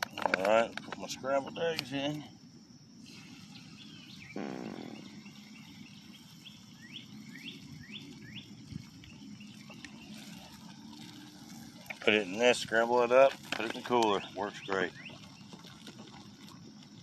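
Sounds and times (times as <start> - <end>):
faint outdoor background: 0.0 - 17.0
quick rising bird chirps: 3.0 - 11.1
harsh bird call: 3.8 - 5.5.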